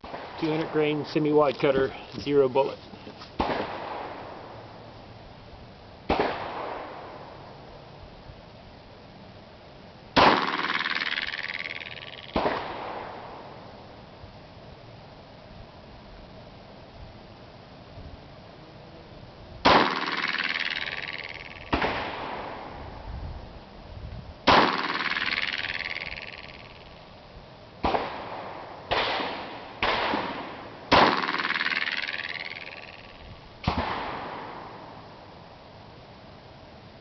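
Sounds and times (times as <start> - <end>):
pistol gunshots with ringing tail: 3.4 - 4.6, 6.1 - 7.4, 10.2 - 11.6, 12.3 - 13.6, 19.6 - 22.8, 24.4 - 25.8, 27.8 - 31.9, 33.6 - 35.1.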